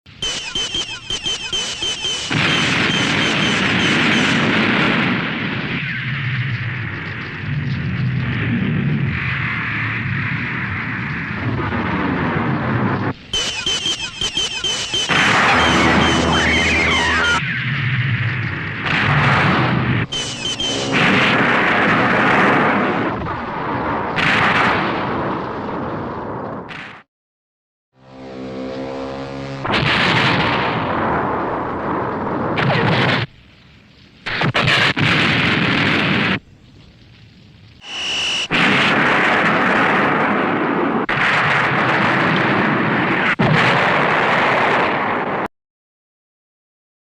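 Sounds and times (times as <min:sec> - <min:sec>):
brief high whine: 0:00.2 - 0:04.4, 0:13.3 - 0:17.4, 0:19.9 - 0:22.1, 0:37.8 - 0:38.6
rumbling explosion blast: 0:02.2 - 0:13.1, 0:15.0 - 0:27.0, 0:29.6 - 0:33.3, 0:34.2 - 0:36.4, 0:38.5 - 0:45.5.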